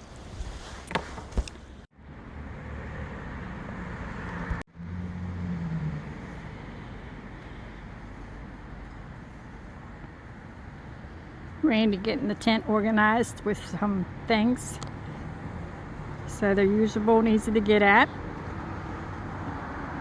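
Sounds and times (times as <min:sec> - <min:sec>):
outdoor background noise: 0:00.0 - 0:20.0
vehicle engine passing: 0:02.0 - 0:11.6, 0:14.8 - 0:20.0.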